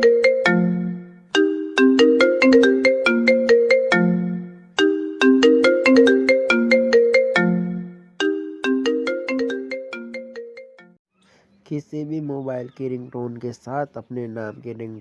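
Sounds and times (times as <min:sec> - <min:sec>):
mobile phone ringtone melody: 0:00.0 - 0:11.0.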